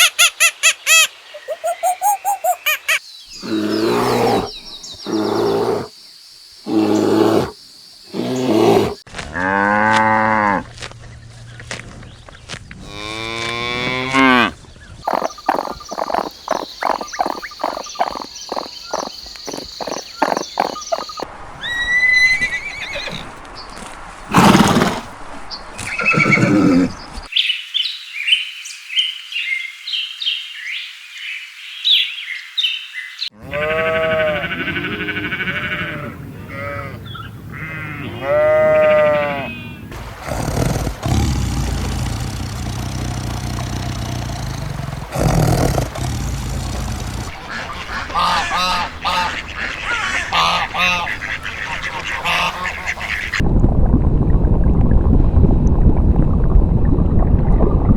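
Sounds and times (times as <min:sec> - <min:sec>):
farm animals calling: 0:12.8 - 0:23.4, 0:33.4 - 0:53.4
high chirping: 0:15.0 - 0:21.8.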